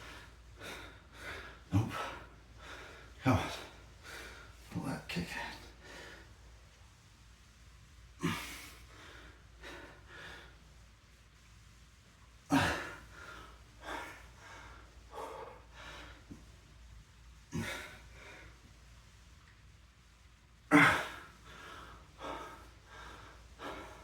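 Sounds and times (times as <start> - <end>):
man breathing hard: 0.0 - 6.6, 12.5 - 16.6, 20.8 - 24.0.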